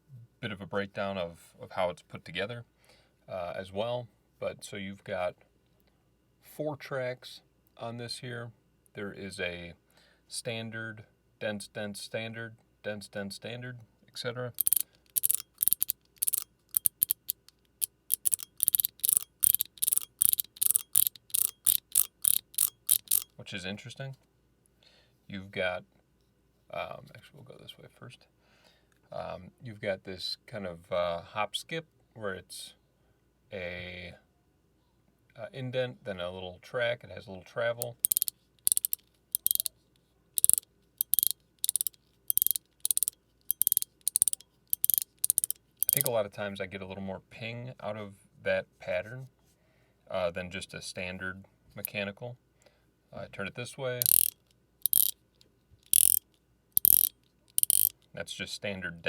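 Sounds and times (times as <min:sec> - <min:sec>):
fidget toy clicking: 0:14.6 - 0:23.3, 0:37.8 - 0:39.7, 0:40.4 - 0:46.1, 0:54.0 - 0:55.2, 0:55.8 - 0:58.0.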